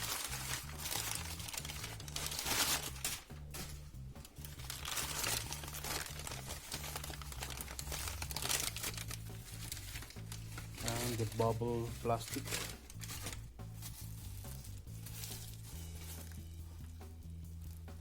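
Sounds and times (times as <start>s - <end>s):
paper crumpling and tearing: 0.0s - 16.4s.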